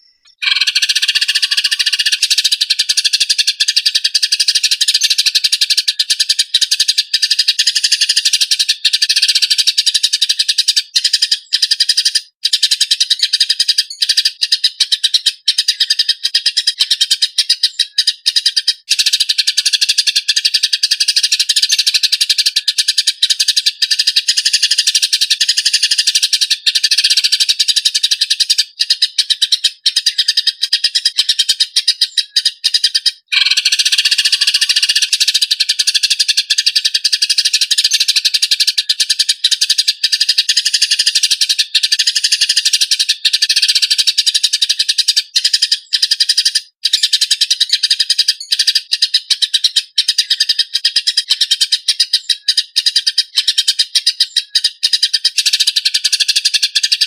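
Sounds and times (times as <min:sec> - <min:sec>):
sparrows chattering harshly: 0:00.0 - 0:57.0.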